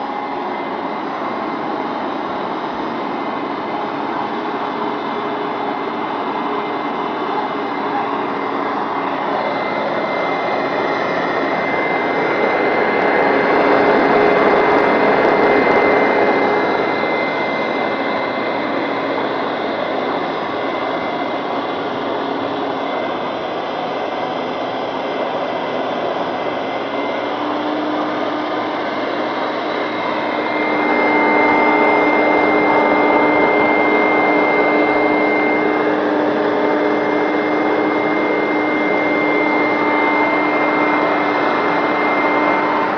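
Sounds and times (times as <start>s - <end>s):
carpet cleaner suction and whine: 0.0s - 42.9s.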